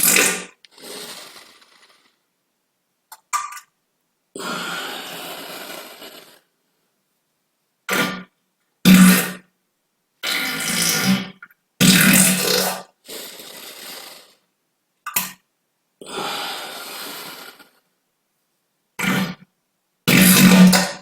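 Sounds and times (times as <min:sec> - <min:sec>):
farts: 0:00.0 - 0:02.2, 0:04.4 - 0:06.5, 0:07.9 - 0:09.5, 0:10.2 - 0:14.4, 0:16.1 - 0:17.8, 0:19.0 - 0:19.5, 0:20.1 - 0:21.0.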